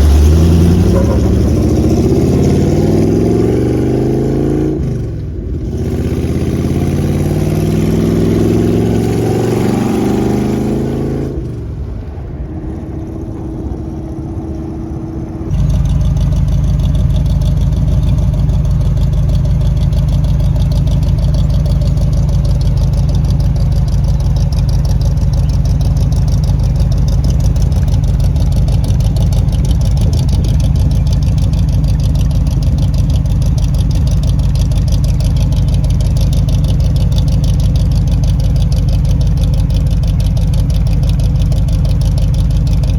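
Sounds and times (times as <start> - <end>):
engine revving: 0.0 - 42.9
deep engine idle: 11.3 - 42.9.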